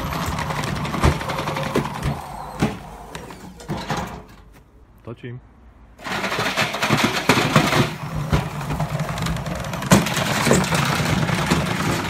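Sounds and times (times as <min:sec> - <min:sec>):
washing machine clattering and knocking: 0:06.1 - 0:12.0.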